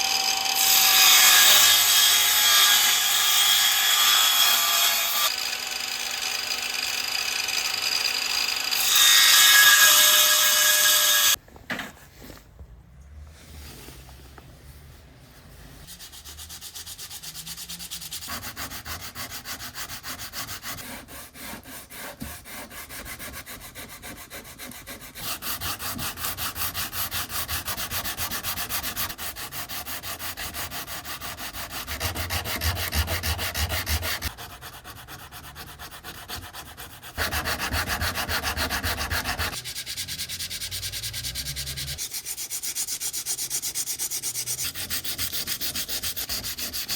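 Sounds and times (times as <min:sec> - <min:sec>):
sandpaper rubbing on wood: 0:15.8 - 0:46.9.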